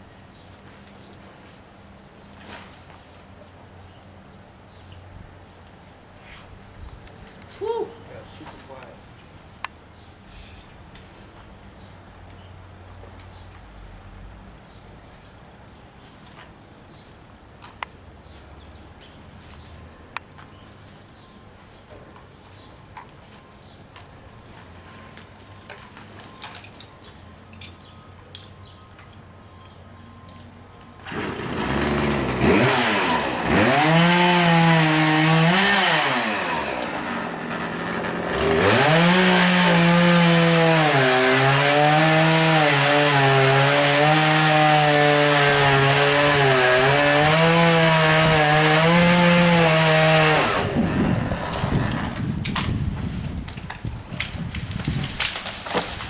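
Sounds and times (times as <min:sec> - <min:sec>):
chainsaw cutting wood: 0:31.0 - 0:56.0.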